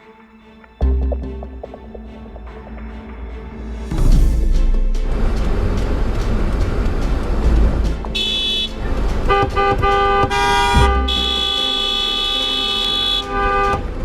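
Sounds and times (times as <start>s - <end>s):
higher-pitched car horn: 8.2s - 8.7s, 9.3s - 13.9s
lower car horn toots: 8.2s - 8.7s, 9.3s - 13.8s.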